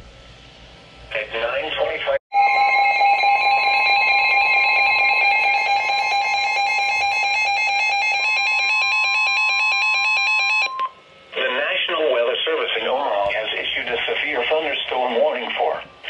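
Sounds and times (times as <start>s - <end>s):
warbling electronic alert tone: 2.4s - 10.8s.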